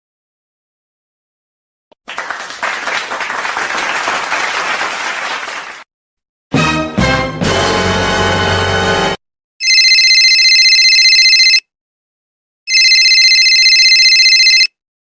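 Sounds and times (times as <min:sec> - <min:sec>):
music clip: 0:06.5 - 0:09.2
telephone trilling rings: 0:09.6 - 0:11.7, 0:12.7 - 0:14.8.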